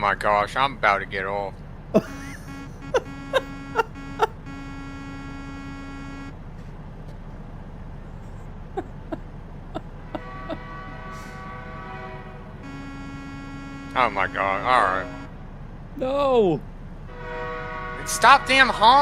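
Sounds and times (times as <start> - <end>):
car horn honking: 2.0 - 6.4, 10.1 - 15.4, 17.1 - 19.0.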